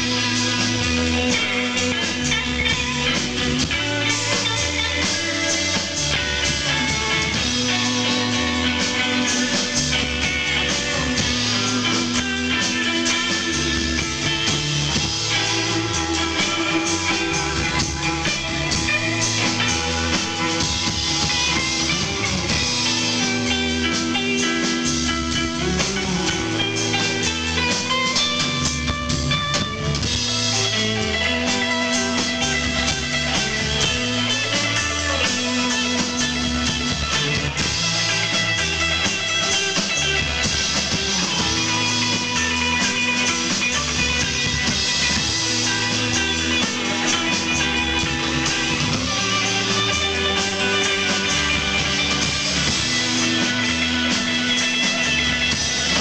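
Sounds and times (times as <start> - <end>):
guitar: 0.0 - 56.0
live rock band instrumental: 0.0 - 56.0
repeating bass line: 0.0 - 56.0.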